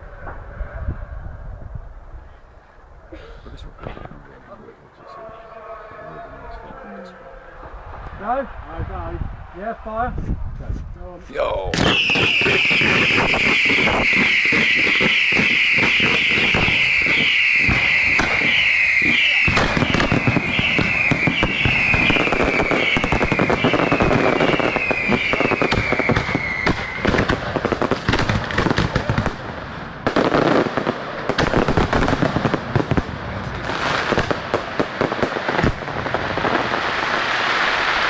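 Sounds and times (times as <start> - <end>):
fireworks bangs and crackling: 11.4 - 38.0
high falling firework whistle: 11.8 - 27.4.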